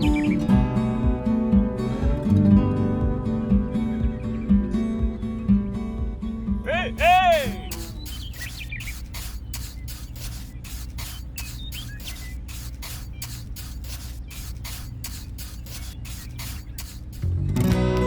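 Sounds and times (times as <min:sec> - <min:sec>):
regular hissing tick: 0:07.0 - 0:17.4
small motor humming: 0:07.0 - 0:17.4.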